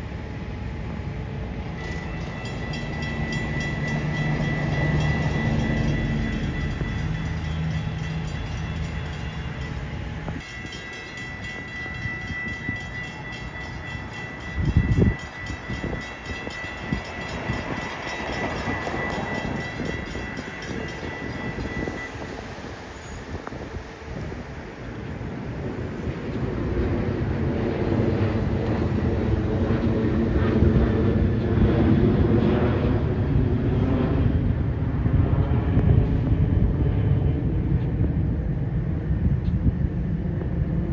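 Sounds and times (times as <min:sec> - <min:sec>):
train wheels rumbling on rails: 0:00.8 - 0:40.9
high ringing tone: 0:01.6 - 0:30.5.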